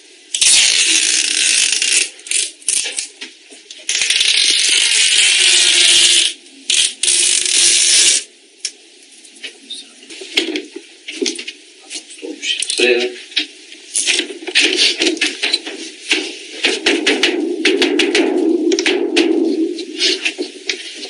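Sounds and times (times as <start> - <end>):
adhesive tape pulled off roll: 0.3 - 3.1, 3.9 - 8.3.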